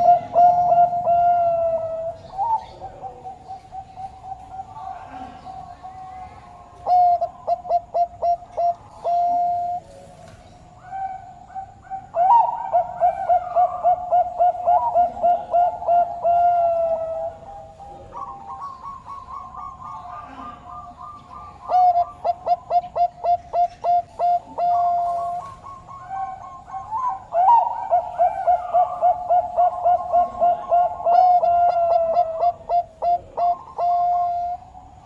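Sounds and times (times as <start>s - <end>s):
dove cooing: 0.0s - 35.0s
higher-pitched dove calling: 0.0s - 35.0s.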